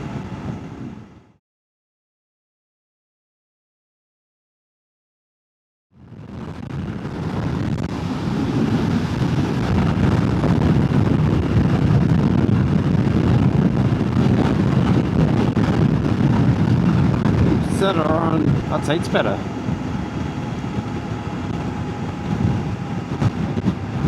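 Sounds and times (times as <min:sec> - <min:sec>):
wind rushing over microphone: 0:00.0 - 0:01.4, 0:06.0 - 0:24.0
road noise: 0:06.2 - 0:24.0.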